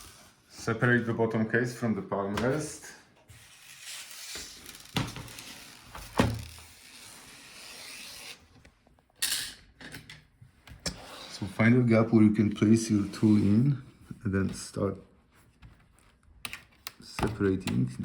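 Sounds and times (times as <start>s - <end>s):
plastic rubbing and scraping: 3.3s - 8.5s.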